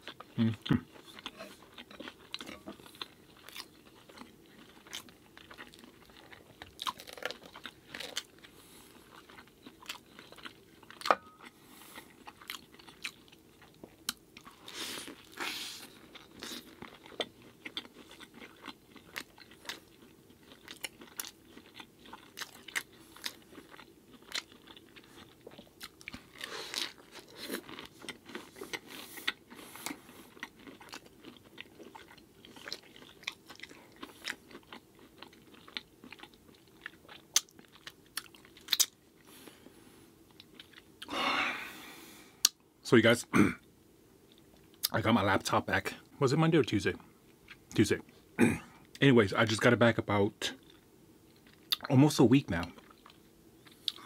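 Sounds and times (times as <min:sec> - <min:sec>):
biting and chewing: 0:00.0 - 0:39.0.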